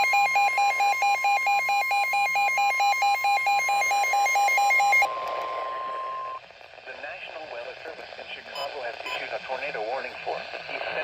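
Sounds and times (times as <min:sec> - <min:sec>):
steady alarm tone: 0:00.0 - 0:06.4
radio hiss: 0:05.3 - 0:11.0.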